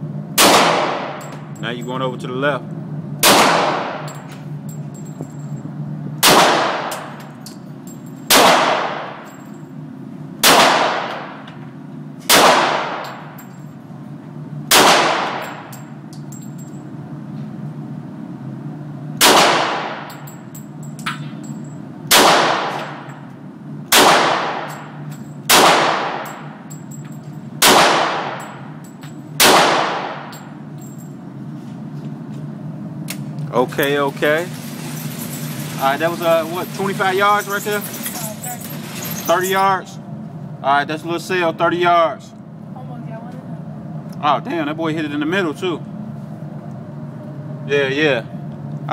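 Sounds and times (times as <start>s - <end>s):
pistol shots with echo: 0.4s - 1.2s, 3.2s - 4.1s, 6.2s - 7.1s, 8.3s - 9.2s, 10.4s - 11.4s, 12.3s - 13.2s, 14.7s - 15.7s, 19.2s - 20.1s, 22.1s - 23.0s, 23.9s - 24.9s, 25.5s - 26.4s, 27.6s - 28.5s, 29.4s - 30.3s.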